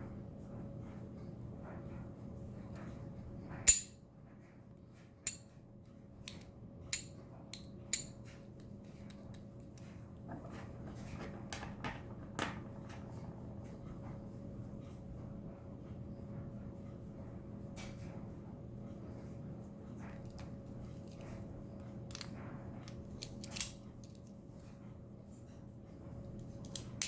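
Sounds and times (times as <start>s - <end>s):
small metal parts clicking: 22.9s - 24.3s, 26.6s - 27.0s.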